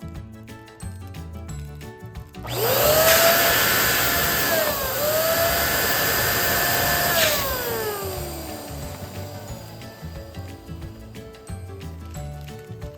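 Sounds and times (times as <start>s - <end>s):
pump air rushing: 2.5s - 11.5s
electric pump motor whining: 2.5s - 11.6s.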